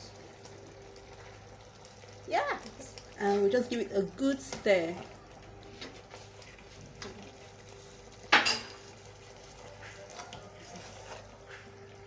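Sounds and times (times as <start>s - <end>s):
spoon stirring porridge in pot: 5.6s - 12.0s.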